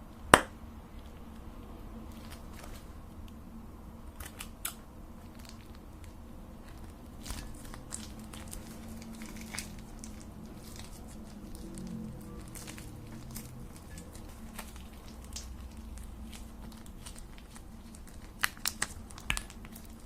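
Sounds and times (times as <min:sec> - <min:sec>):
low steady hum: 0:00.0 - 0:20.0
sharp clicks and crunches: 0:04.1 - 0:20.0.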